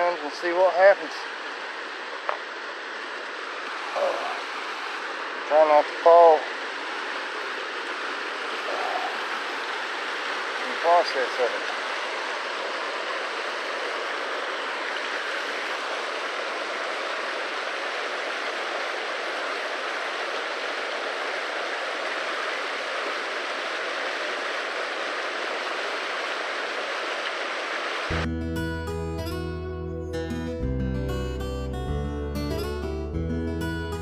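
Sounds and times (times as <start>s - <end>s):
water rushing over rocks: 0.0s - 28.2s
acoustic guitar music: 28.1s - 34.0s.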